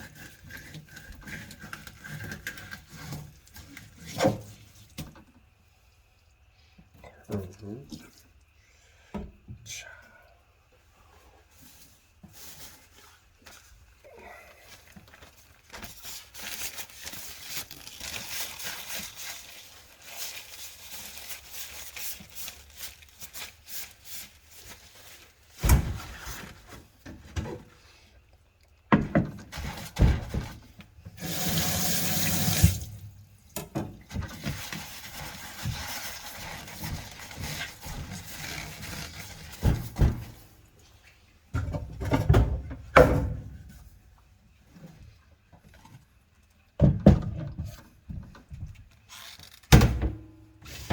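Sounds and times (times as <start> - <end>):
water running from tap: 31.2 - 32.9.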